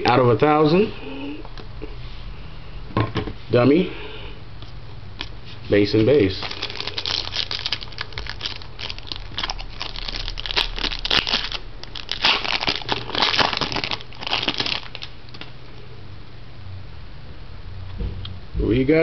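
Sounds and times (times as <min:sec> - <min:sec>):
card pack wrapper crinkling: 0:06.2 - 0:15.5.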